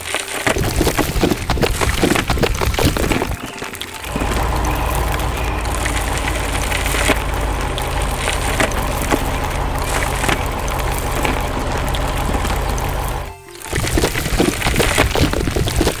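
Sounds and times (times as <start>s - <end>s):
cracking and splintering: 0.0s - 16.0s
construction machinery engine rumble: 3.2s - 13.5s.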